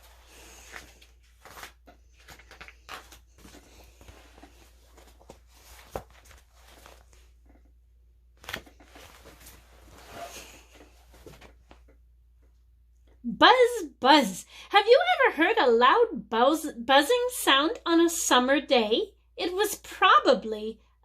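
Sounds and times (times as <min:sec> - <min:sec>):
paper pages rustling: 0:00.0 - 0:07.6, 0:08.3 - 0:11.9.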